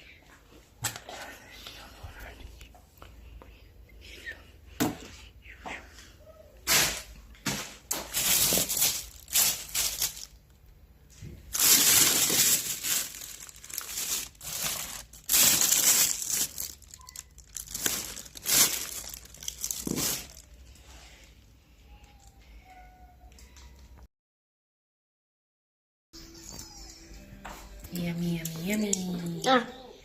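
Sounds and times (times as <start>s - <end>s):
plastic snack packet crinkling: 7.9s - 10.6s, 11.5s - 20.6s.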